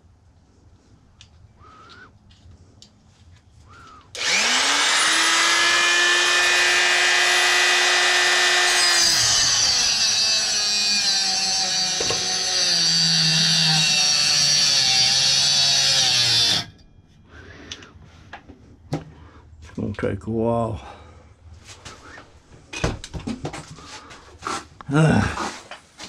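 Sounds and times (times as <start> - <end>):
cut-off tool whining: 3.8 - 16.8
cut-off wheel cutting metal: 4.2 - 16.8.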